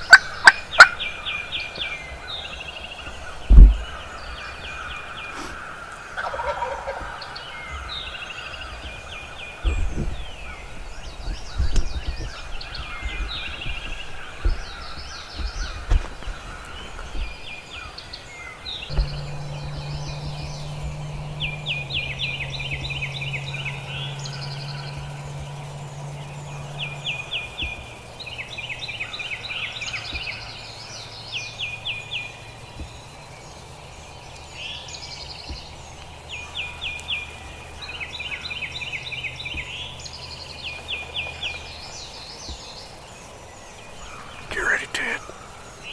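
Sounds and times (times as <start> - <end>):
turkey gobbling: 0.0 - 1.4, 6.2 - 7.9
low thumps: 0.0 - 5.2, 6.9 - 44.5
birds calling: 0.0 - 45.9
low steady hum: 6.0 - 44.6.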